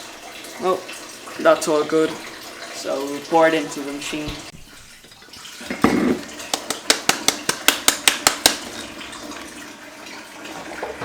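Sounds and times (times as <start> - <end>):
container clinking against filter basket: 5.2 - 9.0.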